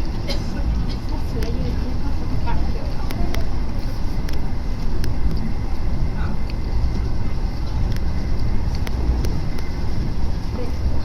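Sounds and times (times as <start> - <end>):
train wheels rumbling on rail: 0.0 - 11.0.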